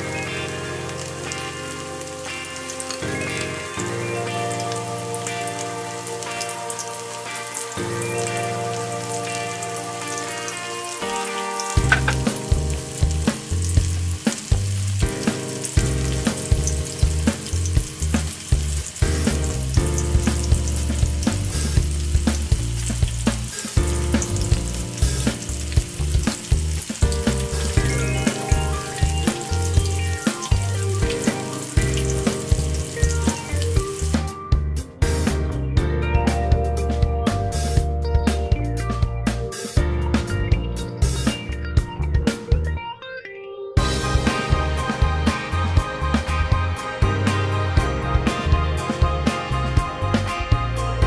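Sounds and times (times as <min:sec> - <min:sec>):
food sizzling in hot oil: 0:00.0 - 0:34.4
background music with beat: 0:00.0 - 0:43.0, 0:43.8 - 0:51.0.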